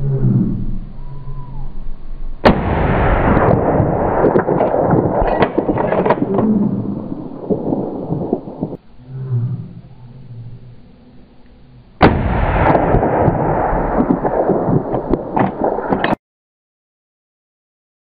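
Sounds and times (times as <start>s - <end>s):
gunshot: 2.4s - 6.6s, 12.0s - 16.2s
loud rushing noise with cracks: 2.5s - 8.8s, 12.0s - 16.2s.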